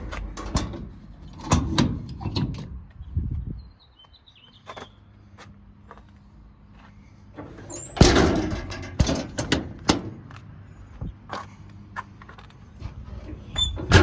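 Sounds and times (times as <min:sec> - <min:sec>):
latch clicks and knocks: 0:00.0 - 0:02.7, 0:07.7 - 0:10.2
truck door thumping shut: 0:07.9 - 0:10.2.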